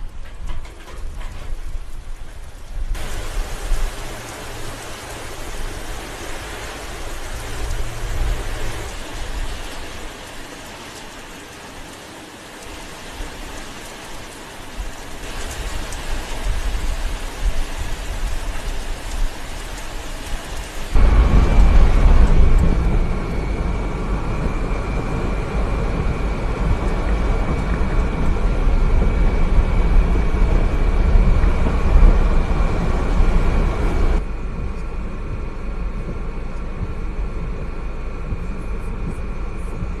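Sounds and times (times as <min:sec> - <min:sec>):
low storm rumble: 0:00.0 - 0:40.0
heavy rain hiss: 0:01.0 - 0:23.3.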